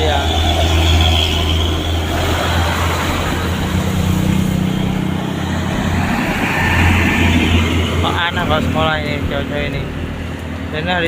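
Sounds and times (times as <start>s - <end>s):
heavy vehicle engine: 0.0s - 11.0s
highway traffic hum: 0.0s - 11.0s.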